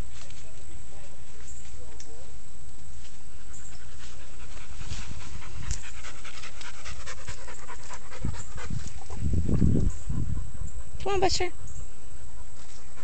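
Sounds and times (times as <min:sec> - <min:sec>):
dog panting: 0:03.5 - 0:13.0.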